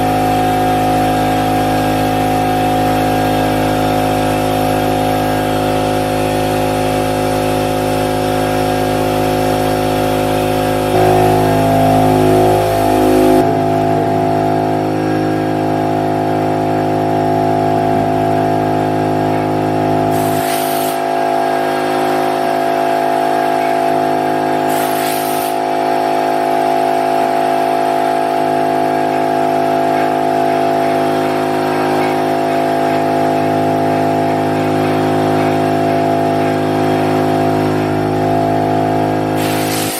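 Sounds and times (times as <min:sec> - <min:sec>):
machine spindle whine: 0:00.0 - 0:39.9.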